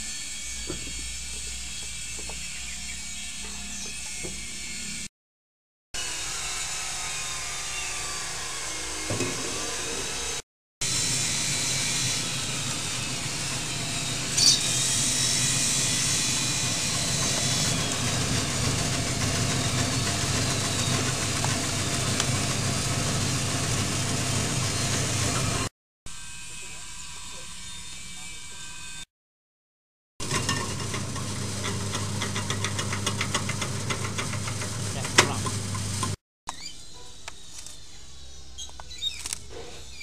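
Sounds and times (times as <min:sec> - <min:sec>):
machine humming: 0:10.8 - 0:25.7.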